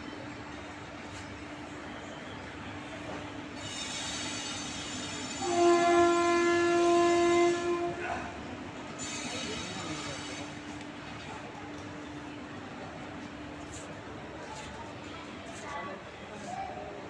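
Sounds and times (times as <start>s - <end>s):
moving train noise: 0.0s - 17.0s
train horn blast: 5.3s - 8.4s.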